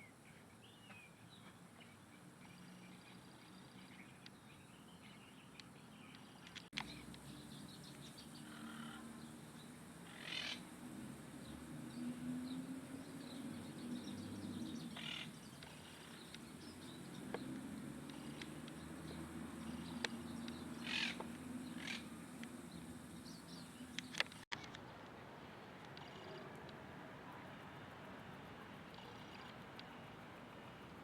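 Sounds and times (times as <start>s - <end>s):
wild birds calling: 10.0s - 10.8s, 11.4s - 24.4s.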